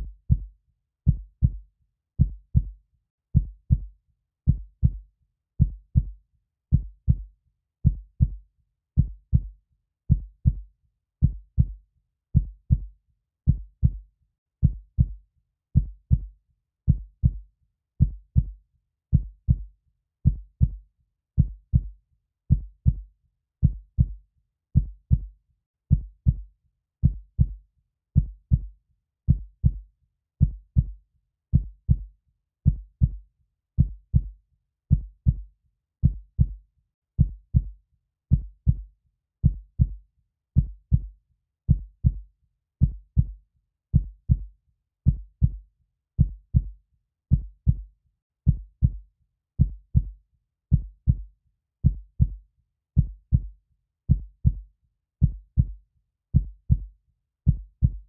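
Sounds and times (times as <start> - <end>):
heartbeat thumps: 29.3 - 29.8, 38.3 - 38.8, 39.4 - 40.0, 40.6 - 41.1, 44.0 - 44.4, 45.1 - 45.6, 46.2 - 46.7, 47.3 - 47.8, 48.5 - 49.0, 49.6 - 50.1, 50.7 - 51.2, 51.8 - 52.4, 53.0 - 53.5, 54.1 - 54.6, 55.2 - 55.8, 56.4 - 56.9, 57.5 - 58.0.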